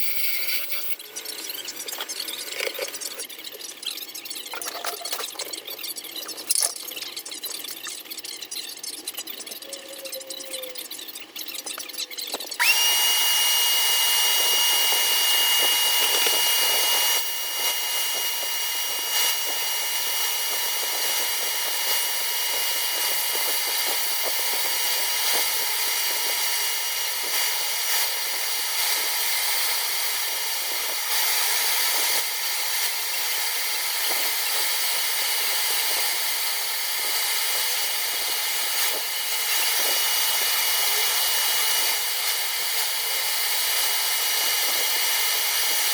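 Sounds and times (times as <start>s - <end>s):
lathe motor whining: 11.6s - 29.8s.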